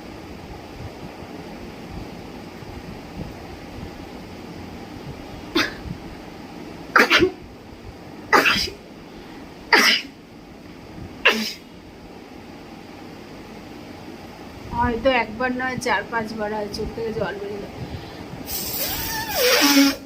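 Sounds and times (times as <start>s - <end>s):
woman sneezing: 5.6s - 5.9s, 7.0s - 7.4s, 8.3s - 8.8s, 9.7s - 10.1s, 11.2s - 11.6s, 18.8s - 20.0s.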